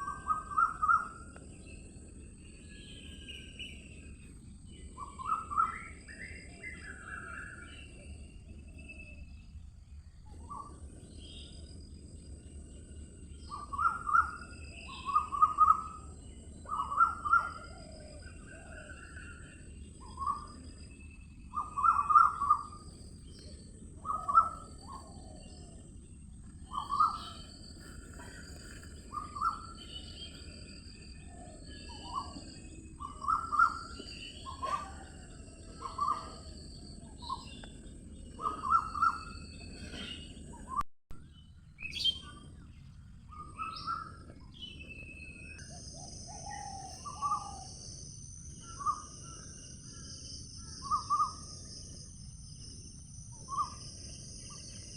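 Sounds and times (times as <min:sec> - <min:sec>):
birds chirping: 0:10.3 - 0:40.8.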